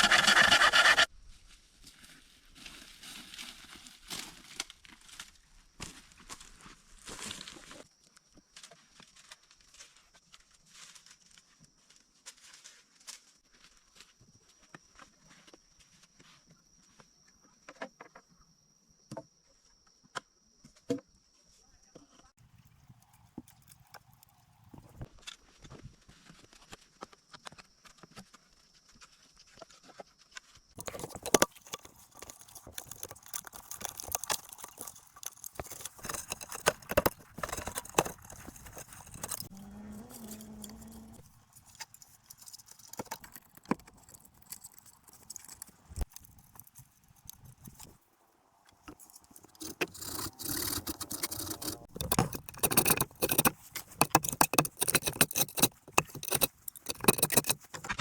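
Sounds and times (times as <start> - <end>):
knocks taps and scrapes: 22.4 - 25.1, 30.8 - 48.0, 48.7 - 58.0.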